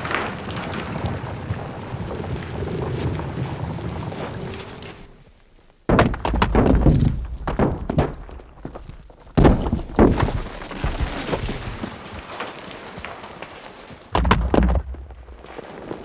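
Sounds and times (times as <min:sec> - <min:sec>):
heavy thuds: 0:04.6 - 0:12.3, 0:14.1 - 0:15.8
clattering: 0:05.9 - 0:16.0.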